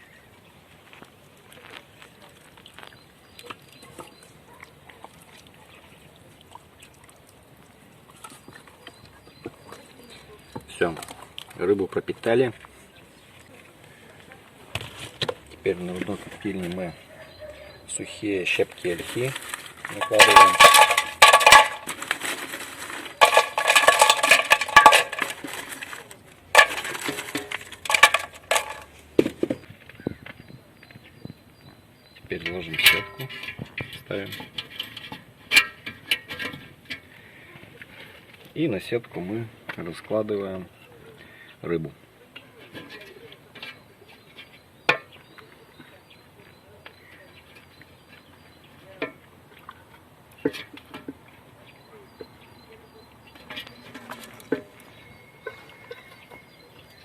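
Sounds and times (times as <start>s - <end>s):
wet squelches of handling fish: 0.0s - 57.0s
wood chips rattling on metal: 18.5s - 29.5s, 53.4s - 57.0s.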